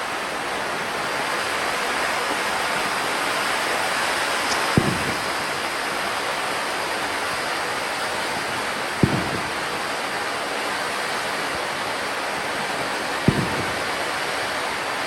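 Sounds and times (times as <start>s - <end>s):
fountain firework hissing: 0.0s - 15.0s
dull thump: 9.0s - 9.6s, 13.3s - 13.8s.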